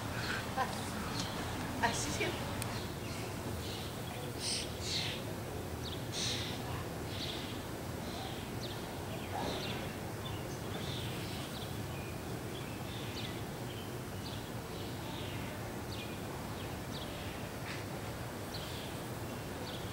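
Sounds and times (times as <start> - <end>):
steady low hum: 0.0 - 13.0
small birds chirping: 0.0 - 19.9.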